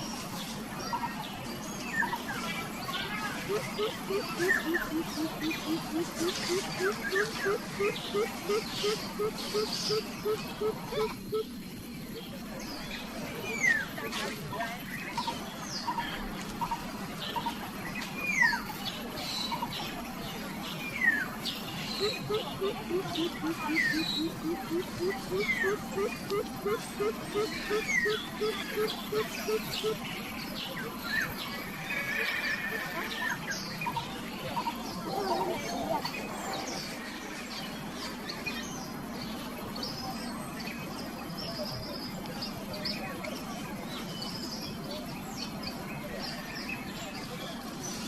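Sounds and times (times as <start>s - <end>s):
bird chirps and ticks: 3.2s - 11.5s, 21.3s - 30.4s.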